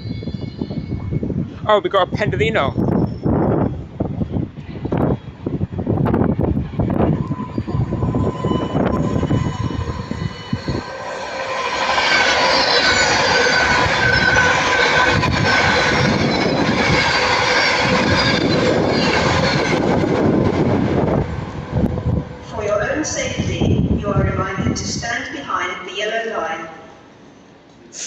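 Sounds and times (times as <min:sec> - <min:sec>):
electric train running: 0:02.8 - 0:24.4
high whining tones: 0:05.9 - 0:24.7.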